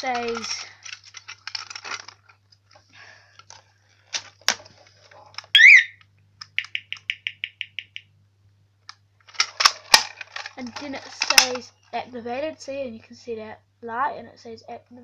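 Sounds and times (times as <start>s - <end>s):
handling clicks and rustling: 0.0s - 7.1s, 8.8s - 11.7s
loud electronic chirp: 5.6s - 6.0s, 6.6s - 8.0s.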